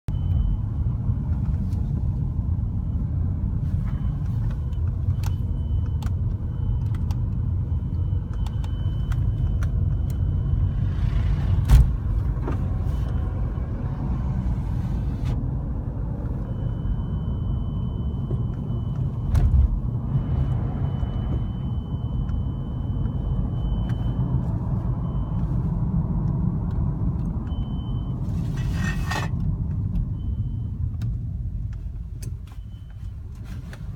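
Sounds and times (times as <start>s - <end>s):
road and engine rumble: 0.0s - 33.9s
thumps from the road: 11.5s - 12.7s, 19.3s - 19.8s.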